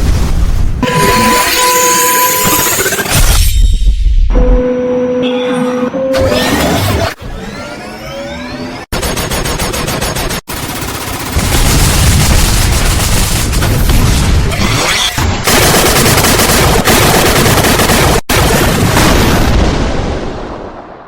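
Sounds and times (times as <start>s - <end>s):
machine-gun fire: 8.9s - 14.5s, 15.4s - 19.8s.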